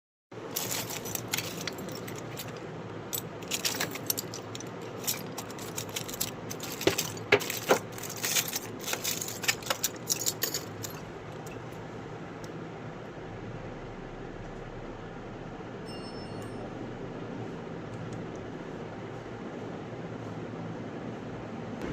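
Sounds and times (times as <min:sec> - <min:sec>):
metal parts clinking: 0:00.4 - 0:11.8
steady low hum: 0:00.4 - 0:21.9.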